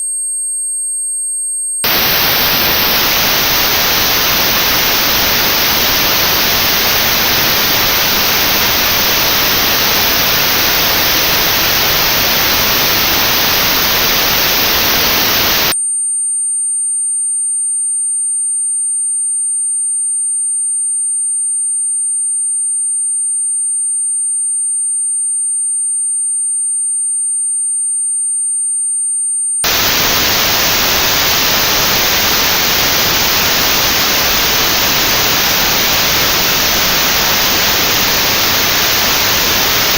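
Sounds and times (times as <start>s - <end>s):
notched white noise hiss: 1.8s - 15.7s, 29.6s - 39.9s
high pure test tone: 1.8s - 39.9s.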